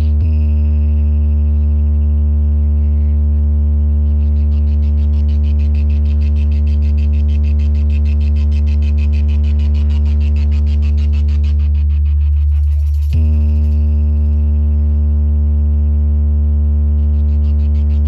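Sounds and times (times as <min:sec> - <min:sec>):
deep bass tone: 0:00.0 - 0:18.0
fast high pulsing: 0:04.1 - 0:14.5.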